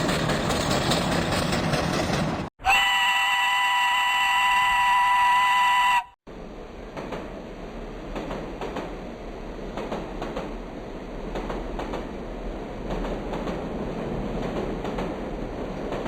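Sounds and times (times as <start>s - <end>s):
train rumbling on rails: 0.0s - 2.5s, 6.3s - 16.0s.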